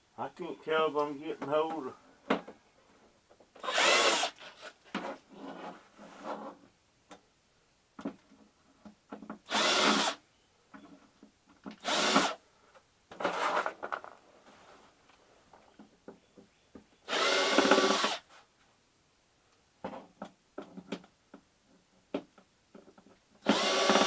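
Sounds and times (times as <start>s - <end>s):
power drill bursts: 3.6s - 4.7s, 9.5s - 10.2s, 11.8s - 12.4s, 17.1s - 18.2s, 23.4s - 24.0s.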